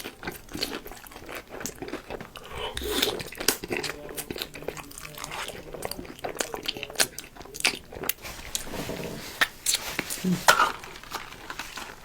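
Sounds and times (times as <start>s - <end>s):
person chewing crunchy food: 0.0s - 12.0s
mouth clicks: 2.2s - 3.8s.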